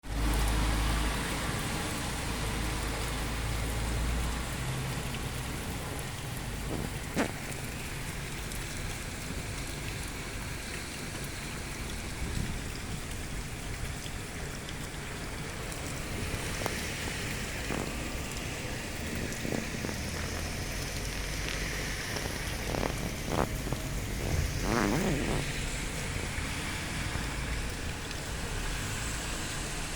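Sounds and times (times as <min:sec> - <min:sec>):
rain pattering on surfaces: 0:00.0 - 0:29.9.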